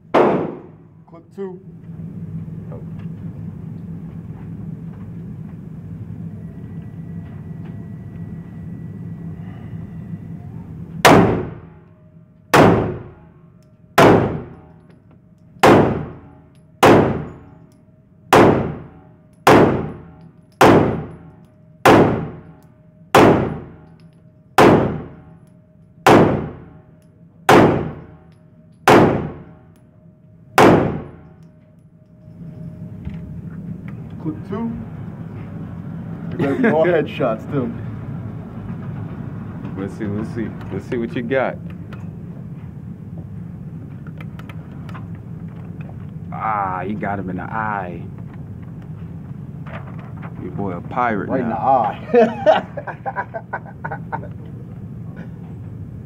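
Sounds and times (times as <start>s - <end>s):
steady low hum: 0.0s - 56.0s
gunshots with ringing: 0.1s - 0.8s, 11.0s - 11.8s, 12.5s - 13.3s, 14.0s - 14.7s, 15.6s - 17.6s, 18.3s - 24.0s, 24.6s - 25.4s, 26.0s - 26.8s, 27.5s - 29.6s, 30.6s - 31.4s.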